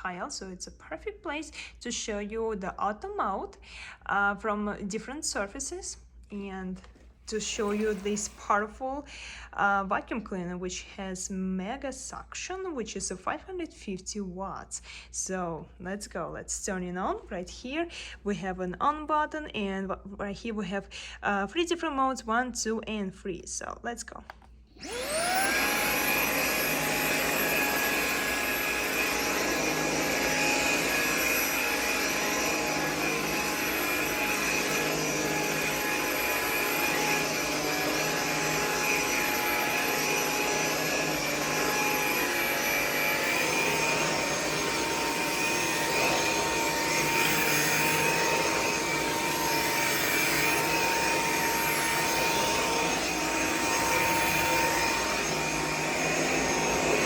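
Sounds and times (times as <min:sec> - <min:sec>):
stick vacuum running: 0:07.4 - 0:08.4, 0:24.8 - 0:57.0.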